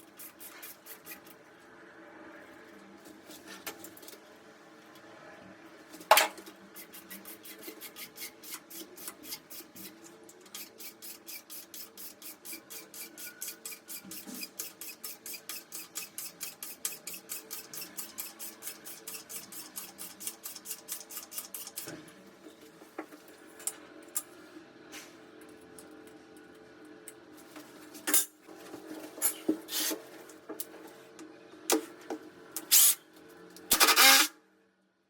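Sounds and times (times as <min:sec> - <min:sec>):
hand tool rasping back and forth: 0:06.8 - 0:21.9.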